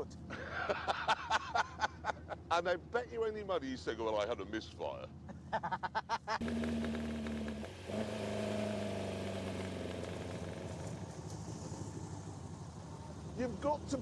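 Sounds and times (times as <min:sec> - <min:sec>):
dune buggy engine revving: 0:06.4 - 0:14.0.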